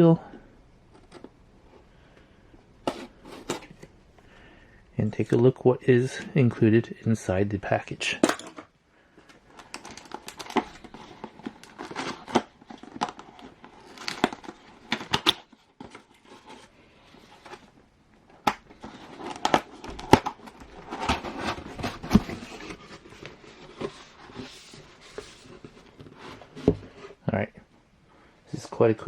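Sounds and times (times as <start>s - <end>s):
packaging rustling and crinkling: 9.2s - 27.1s.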